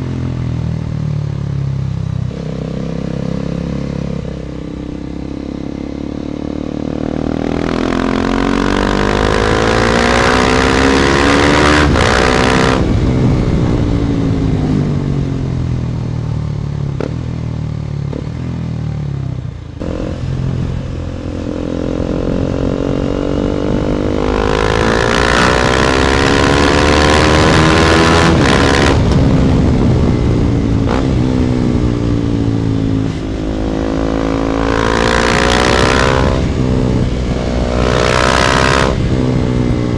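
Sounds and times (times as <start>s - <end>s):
motorcycle engine revving: 1.3s - 39.9s
wind rushing over microphone: 7.3s - 16.2s, 19.8s - 39.9s.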